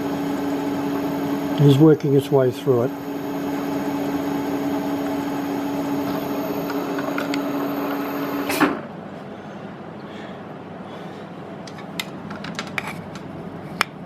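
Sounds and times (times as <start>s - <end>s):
milling machine cutting metal: 0.0s - 8.6s
quiet steady machine noise: 0.0s - 14.0s.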